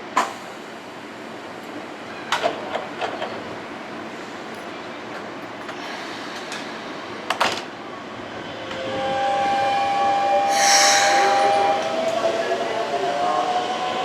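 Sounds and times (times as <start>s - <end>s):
electric train approaching: 6.0s - 14.0s.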